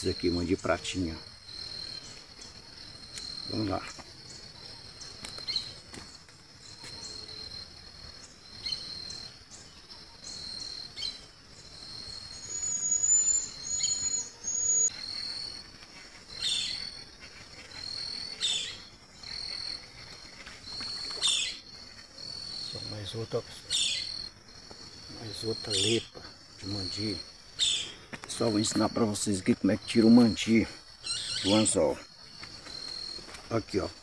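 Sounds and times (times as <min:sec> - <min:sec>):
insects chirring: 0:00.0 - 0:34.0
bird whistling and chirping: 0:12.2 - 0:14.9.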